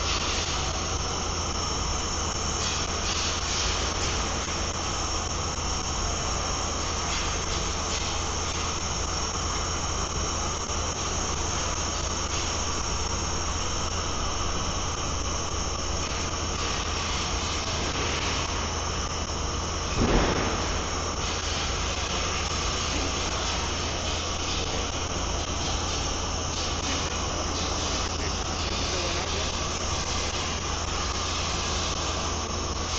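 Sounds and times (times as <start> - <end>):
machinery hum and whine: 0.0 - 32.9
loud clunk: 19.9 - 20.9.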